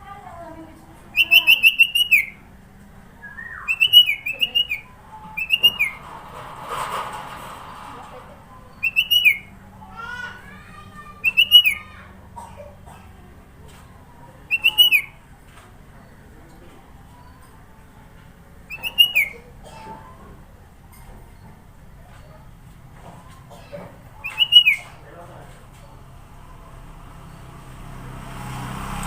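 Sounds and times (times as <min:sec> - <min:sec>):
bird singing whistled notes: 0:01.1 - 0:02.4, 0:03.2 - 0:06.0, 0:08.7 - 0:09.5, 0:11.2 - 0:11.8, 0:14.5 - 0:15.2, 0:18.7 - 0:19.4, 0:24.2 - 0:25.0
quiet bird chirps: 0:03.2 - 0:06.0, 0:08.6 - 0:09.5, 0:14.5 - 0:15.2, 0:15.9 - 0:17.7, 0:18.7 - 0:19.5, 0:24.2 - 0:25.1.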